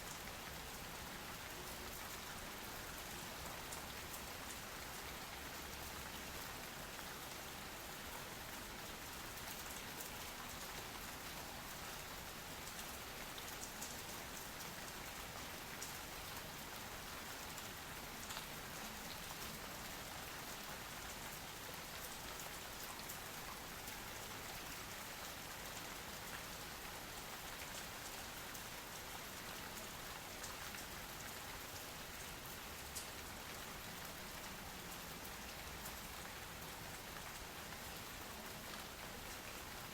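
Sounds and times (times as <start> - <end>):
soft rain hiss: 0.0 - 39.9.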